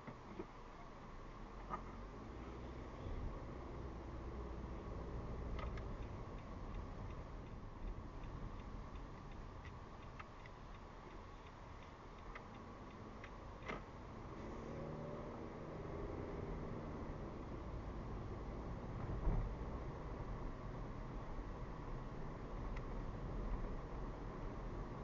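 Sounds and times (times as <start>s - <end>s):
engine and road rumble: 0.0s - 25.0s
turn signal ticking: 2.6s - 14.4s.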